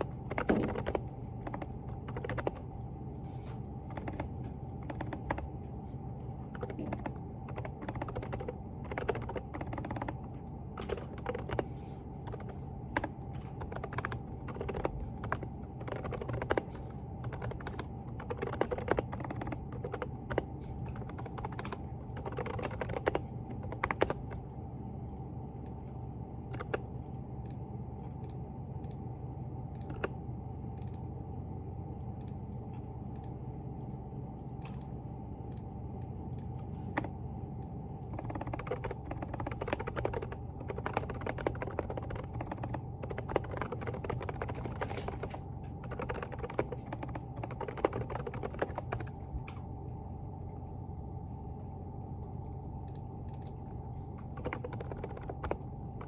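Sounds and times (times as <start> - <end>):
mechanical keyboard typing: 0.0 - 2.9, 3.7 - 5.5, 6.4 - 24.4, 26.5 - 26.9, 29.8 - 30.2, 36.4 - 37.2, 38.0 - 49.3, 52.9 - 56.0
steady low hum: 0.0 - 56.0.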